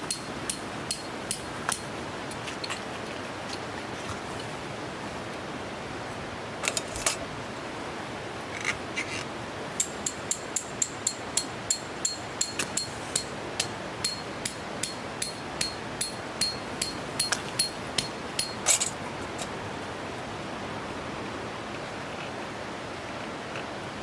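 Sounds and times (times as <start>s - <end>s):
ringing metallic taps: 0.0s - 1.9s, 9.8s - 19.0s.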